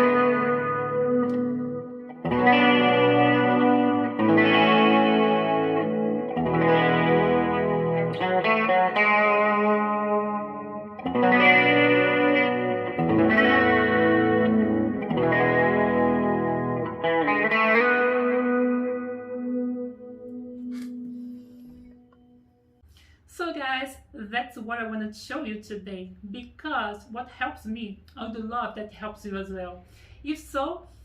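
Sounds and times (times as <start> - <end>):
electric guitar chords ringing: 0.0 - 22.6.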